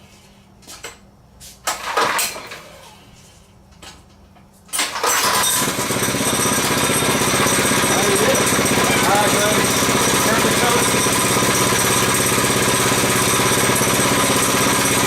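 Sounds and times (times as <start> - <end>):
small engine running: 4.8 - 15.0
starter rope pull: 4.8 - 15.0.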